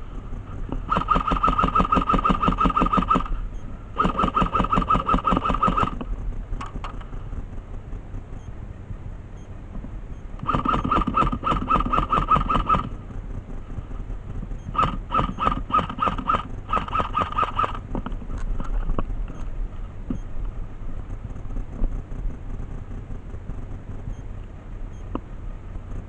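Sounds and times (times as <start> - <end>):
mechanical whir: 0.0 - 26.0
airsoft gun rapid shots: 0.9 - 3.3, 4.0 - 6.0, 10.4 - 12.9, 14.7 - 17.8.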